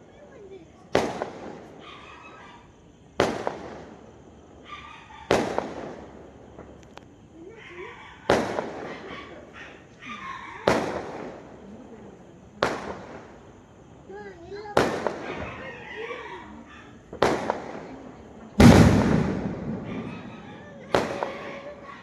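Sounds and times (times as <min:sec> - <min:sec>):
fireworks bangs: 0:05.3 - 0:06.8, 0:08.3 - 0:09.1, 0:14.8 - 0:15.6, 0:17.1 - 0:18.0, 0:18.6 - 0:22.0.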